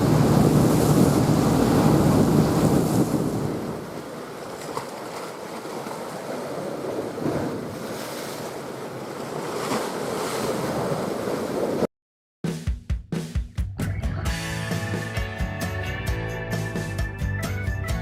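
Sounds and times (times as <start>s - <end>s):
sea waves: 0.0s - 11.9s
wind: 0.0s - 11.9s.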